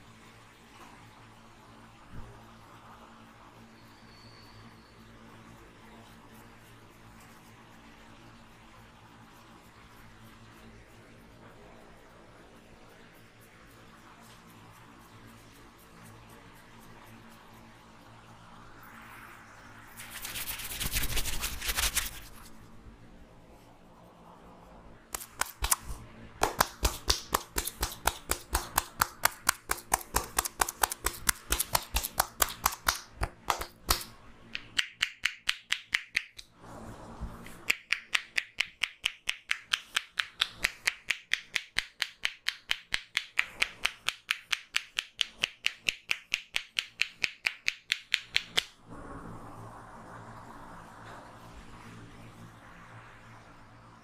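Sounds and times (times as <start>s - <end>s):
hands slapping in massage: 20.0s - 22.5s, 25.1s - 36.5s, 37.4s - 48.7s.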